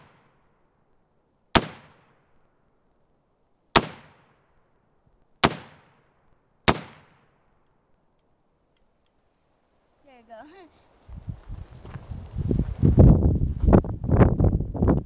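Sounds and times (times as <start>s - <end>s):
rifle shots with short echo: 1.5s - 2.4s, 3.7s - 4.6s, 5.4s - 7.6s.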